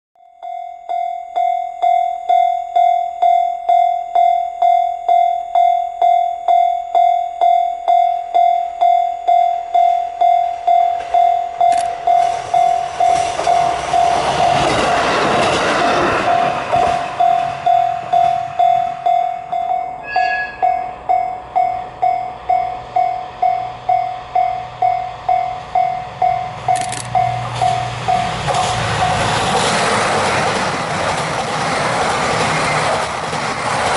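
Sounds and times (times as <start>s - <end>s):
level crossing bell ringing: 0.2s - 15.0s, 16.2s - 29.4s
diesel train rushing past: 10.1s - 33.9s.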